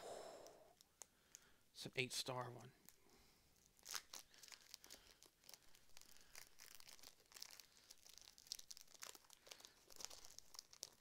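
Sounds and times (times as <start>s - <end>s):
card pack crinkling: 3.6s - 11.0s.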